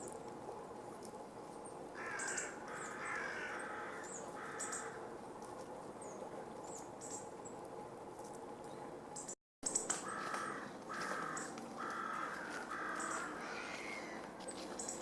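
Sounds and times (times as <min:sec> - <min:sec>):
crow cawing: 0:02.0 - 0:05.1, 0:10.0 - 0:14.3.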